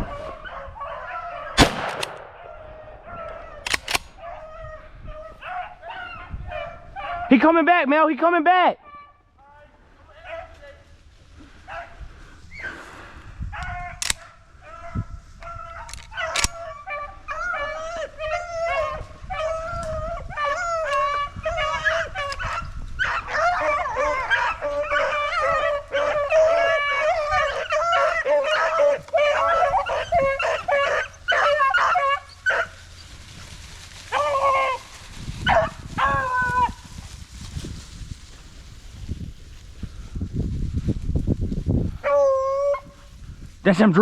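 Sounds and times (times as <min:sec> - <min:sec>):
hounds baying and yelping: 0:00.0 - 0:01.6, 0:02.3 - 0:07.4, 0:08.8 - 0:09.3, 0:11.4 - 0:12.8, 0:13.5 - 0:37.1, 0:41.9 - 0:43.2.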